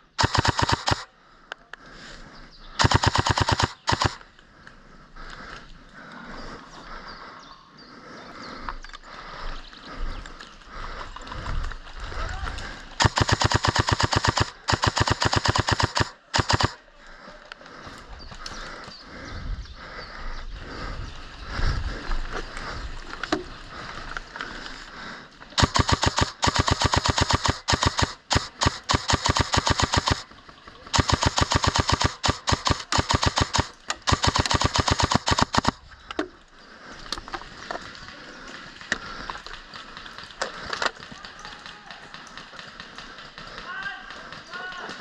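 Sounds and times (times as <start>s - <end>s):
airsoft gun full-auto bursts: 0.0s - 1.1s, 2.8s - 4.2s, 13.0s - 16.8s, 25.6s - 35.8s.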